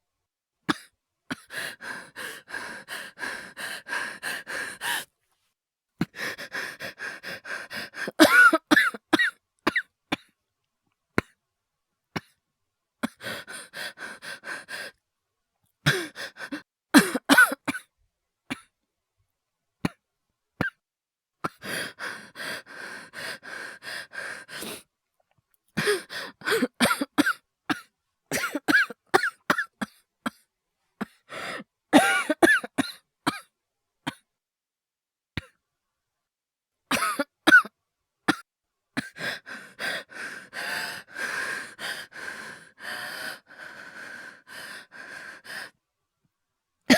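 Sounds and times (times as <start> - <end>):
quick ragged breathing: 1.4 - 5.1, 6.0 - 8.2, 21.5 - 24.8, 39.1 - 45.7
man coughing: 8.2 - 9.8, 32.0 - 33.4.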